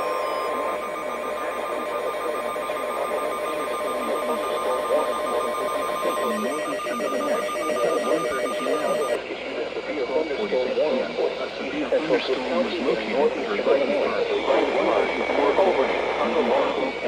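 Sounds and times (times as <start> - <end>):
fast-pulsing electronic beep: 0.0 - 9.2
steady alert tone: 0.0 - 9.2
warbling radio noise: 0.0 - 9.2, 11.9 - 17.0.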